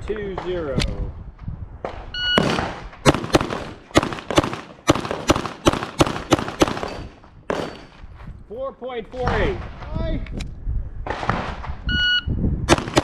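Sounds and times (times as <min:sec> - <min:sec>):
rapid pistol shots: 0:02.4 - 0:07.9, 0:12.7 - 0:13.0.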